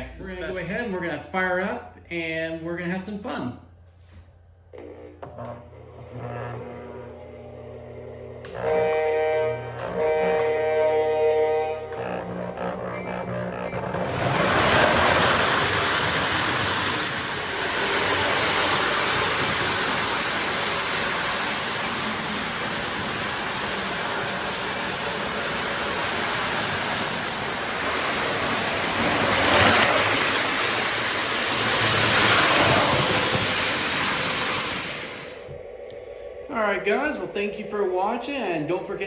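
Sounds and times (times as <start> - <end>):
model train rumbling on track: 6.5 - 35.5.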